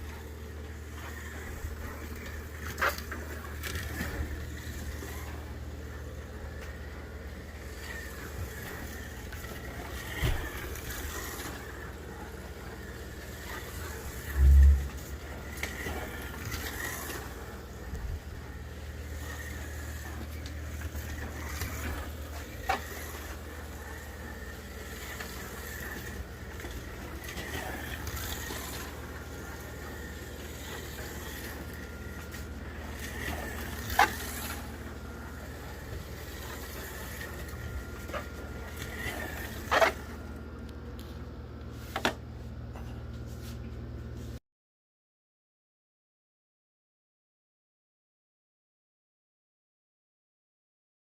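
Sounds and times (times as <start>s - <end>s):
slot car motor humming: 0.0s - 41.2s.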